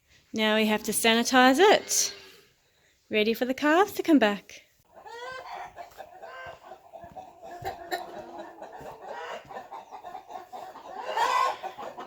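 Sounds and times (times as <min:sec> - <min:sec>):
chickens clucking: 0:04.9 - 0:12.0.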